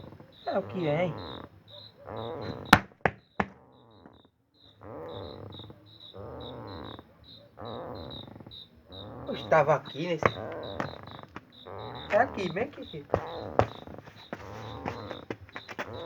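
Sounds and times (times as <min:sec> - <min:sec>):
groaning snore-like underground noise: 0:00.0 - 0:02.8, 0:03.4 - 0:16.0
crickets chirping: 0:00.0 - 0:16.0
sharp knocks: 0:02.4 - 0:03.6, 0:12.1 - 0:15.9.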